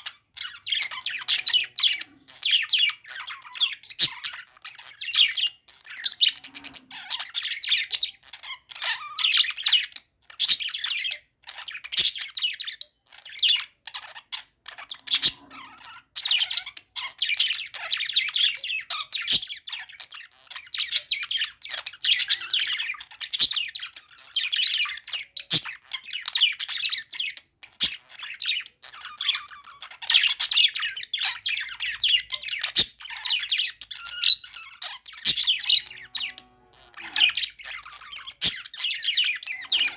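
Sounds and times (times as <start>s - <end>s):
budgerigars chattering and chirping: 0.0s - 39.9s
budgerigar squawks: 34.2s - 39.9s.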